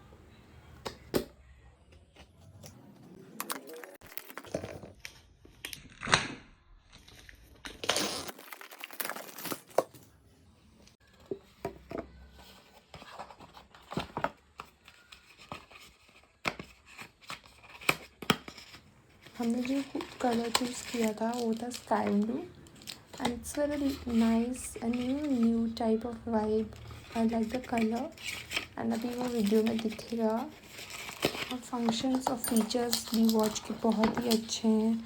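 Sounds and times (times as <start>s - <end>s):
packaging tearing and crinkling: 4.0s - 4.9s, 5.7s - 9.9s, 16.8s - 24.0s, 26.7s - 34.6s.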